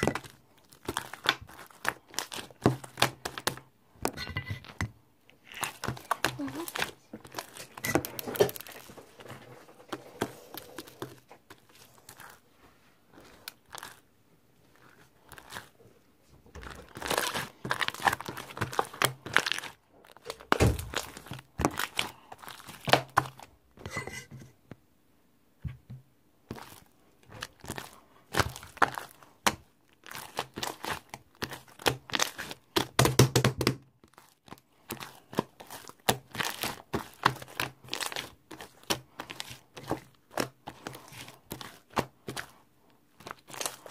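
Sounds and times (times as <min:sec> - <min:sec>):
crackling handling noises: 0:00.0 - 0:24.8, 0:25.7 - 0:33.0.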